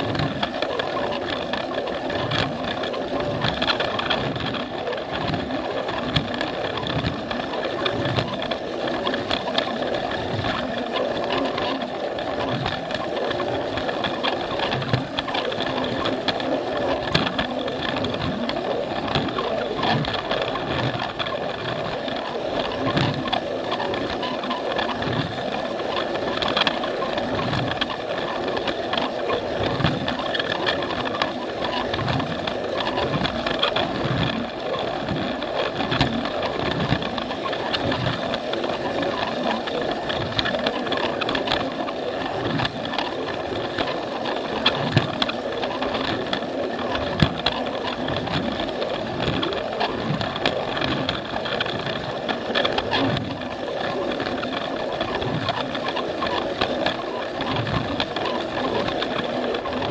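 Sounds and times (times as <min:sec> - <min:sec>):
wheels clicking on plastic track: 0:00.0 - 0:59.9.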